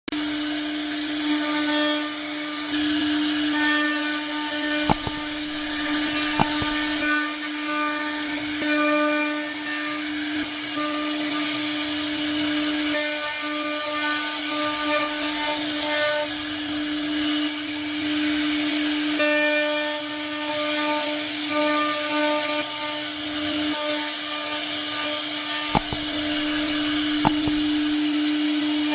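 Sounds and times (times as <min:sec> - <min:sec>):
sharp clicks: 0:04.9 - 0:07.0, 0:25.7 - 0:28.0.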